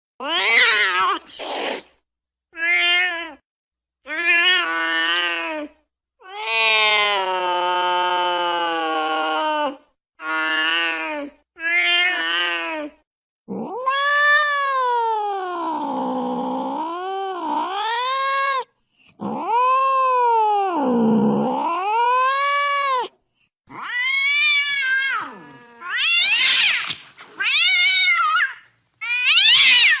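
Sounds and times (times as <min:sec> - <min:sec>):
angry cat yowling: 0:00.2 - 0:01.4, 0:13.5 - 0:23.1, 0:23.7 - 0:30.0.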